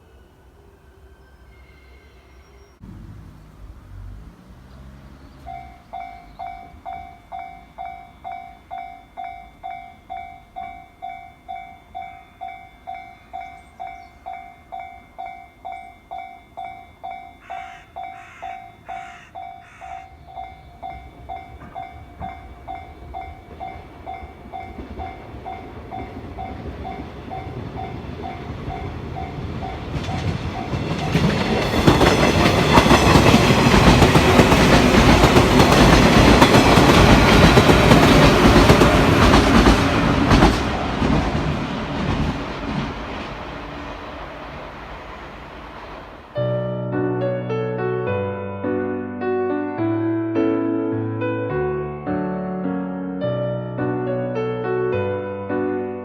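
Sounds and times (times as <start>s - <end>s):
train passing: 0.0s - 47.5s
train wheels clacking on rail joints: 5.4s - 44.4s.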